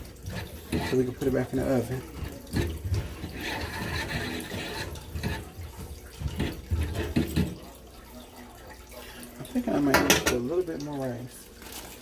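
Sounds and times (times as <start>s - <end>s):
liquid sloshing: 0.0s - 12.0s.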